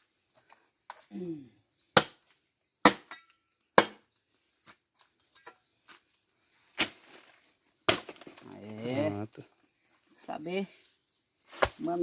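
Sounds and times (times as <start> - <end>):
firewood pieces knocking together: 7.9 - 8.6.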